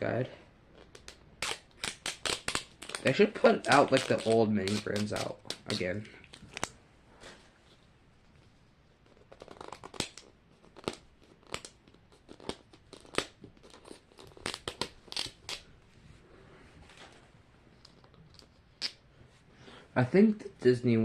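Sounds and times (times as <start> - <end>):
plastic packaging crinkling: 0.8 - 6.7.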